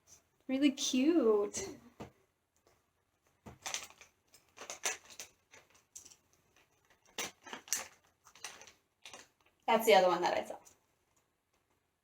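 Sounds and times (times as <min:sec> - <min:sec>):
packaging crinkling and rustling: 0:03.2 - 0:09.6.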